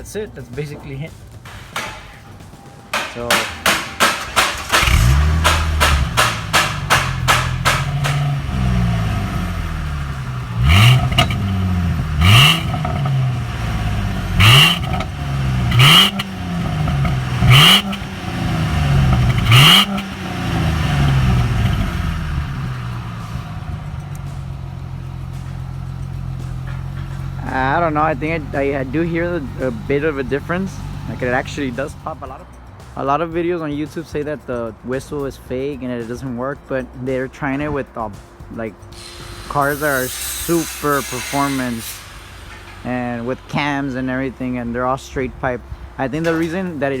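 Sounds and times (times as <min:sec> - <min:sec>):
car engine idling: 0:00.6 - 0:33.5
car engine revving: 0:01.2 - 0:32.8
sharp clicks: 0:03.0 - 0:08.4.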